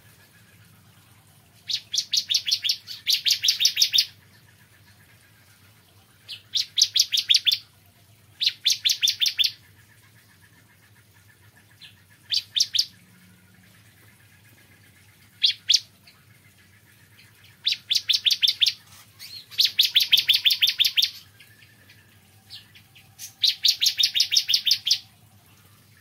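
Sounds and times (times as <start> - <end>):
bird singing high trills: 1.7 - 4.2, 6.3 - 7.6, 8.4 - 9.6, 17.6 - 26.0.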